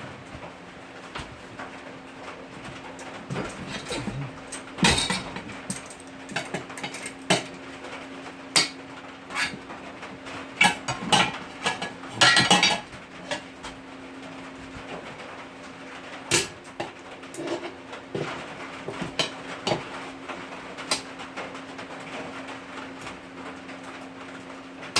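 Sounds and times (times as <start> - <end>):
metal clanks on wheel rim: 3.3 - 7.6.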